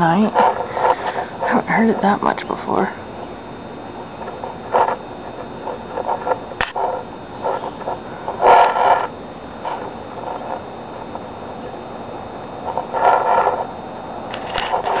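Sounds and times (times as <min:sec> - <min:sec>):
nighthawk calling: 0:07.0 - 0:09.1.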